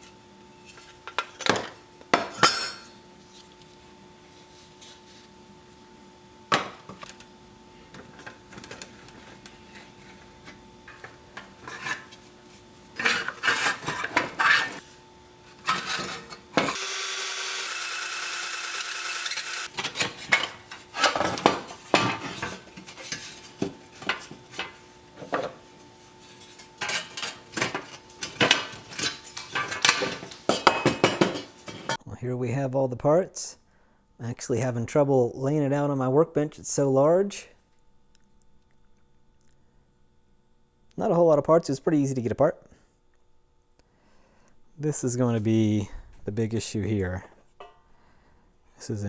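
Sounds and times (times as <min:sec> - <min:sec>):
metal clinks and scrapes: 0:13.0 - 0:14.8, 0:15.6 - 0:16.8, 0:26.2 - 0:32.0
steady whirring: 0:16.6 - 0:19.7.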